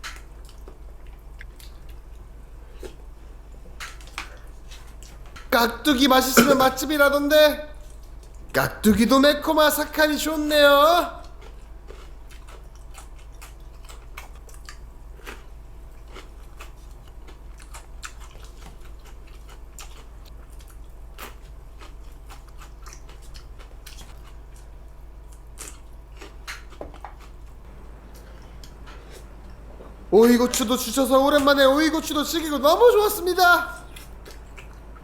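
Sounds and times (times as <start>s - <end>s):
chewing crisp vegetables: 0.0s - 35.0s
mouth noises: 5.6s - 7.8s, 8.6s - 11.2s, 27.7s - 34.8s
low hum: 27.6s - 33.0s.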